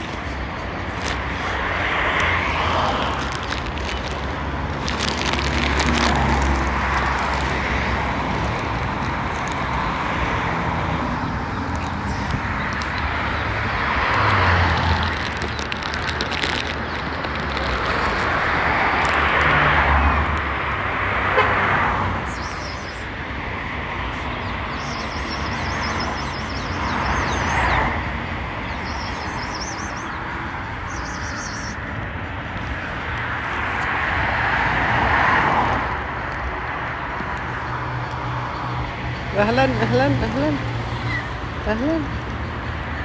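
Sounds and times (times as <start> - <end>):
low traffic rumble: 0.0 - 43.0
vehicles passing: 0.0 - 43.0.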